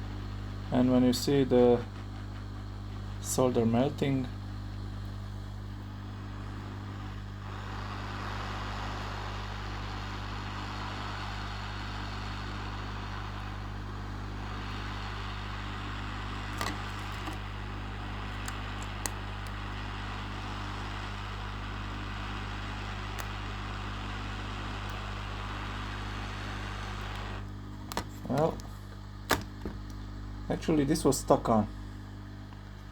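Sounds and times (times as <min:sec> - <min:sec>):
low electrical hum: 0:00.0 - 0:32.9
hot air blower hissing: 0:06.1 - 0:30.0.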